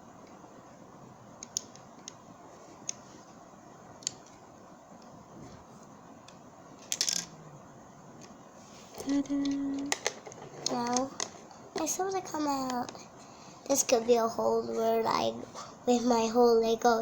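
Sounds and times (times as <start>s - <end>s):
coin clicks and taps: 6.9s - 7.3s.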